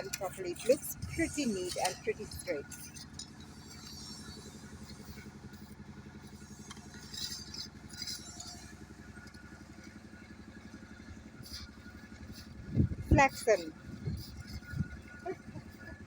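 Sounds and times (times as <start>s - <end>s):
engine running with rapid pulse: 0.0s - 16.0s.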